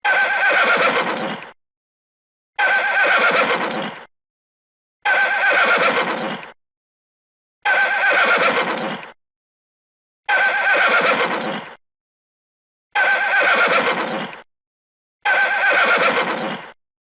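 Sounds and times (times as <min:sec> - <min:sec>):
horse whinnying: 0:00.0 - 0:01.6, 0:02.6 - 0:04.1, 0:05.0 - 0:06.6, 0:07.6 - 0:09.2, 0:10.3 - 0:11.8, 0:12.9 - 0:14.5, 0:15.2 - 0:16.8.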